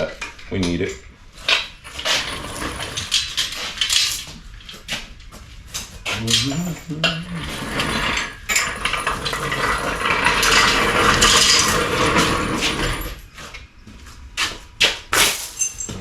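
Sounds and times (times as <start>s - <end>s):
metal tools clattering: 0.2s - 13.4s, 15.1s - 16.0s
sharp metal clinks: 15.2s - 16.0s.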